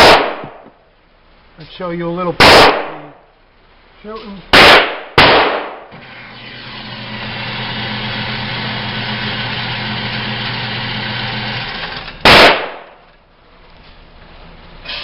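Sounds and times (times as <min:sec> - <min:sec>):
loud gunshot: 0:00.0 - 0:00.6, 0:02.4 - 0:03.2, 0:04.5 - 0:06.0, 0:12.2 - 0:13.0
small electric motor humming: 0:06.1 - 0:12.0.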